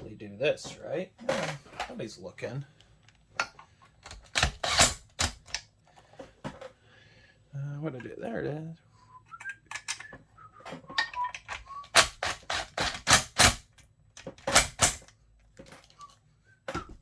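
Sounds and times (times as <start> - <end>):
metallic clicks and clacks of tools: 3.0 - 5.7, 9.4 - 16.8.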